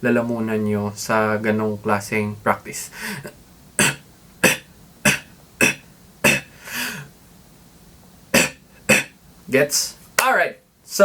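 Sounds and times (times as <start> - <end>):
beatbox cough snare: 3.8 - 6.6, 8.3 - 9.2.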